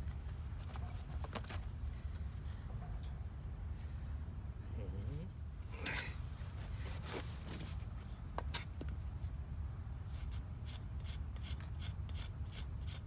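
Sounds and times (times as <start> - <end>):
knife scraping firewood: 10.1 - 13.0.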